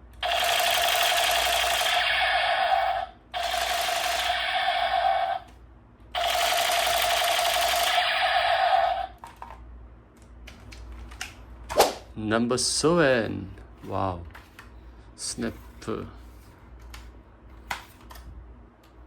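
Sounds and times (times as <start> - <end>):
toy gun buzzing rattle: 0.2 - 5.5, 6.2 - 9.5.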